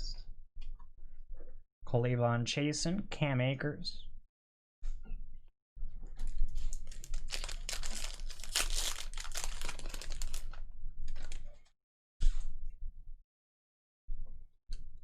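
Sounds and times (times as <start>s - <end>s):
wrappers tearing and crinkling: 6.2s - 11.6s.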